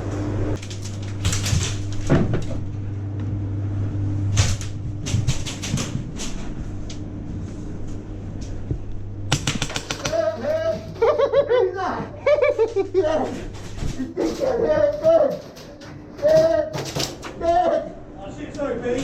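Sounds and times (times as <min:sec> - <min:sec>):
steady low hum: 0:00.0 - 0:16.2
pellets striking hard surfaces: 0:09.3 - 0:10.3
airsoft guns firing: 0:09.3 - 0:10.4.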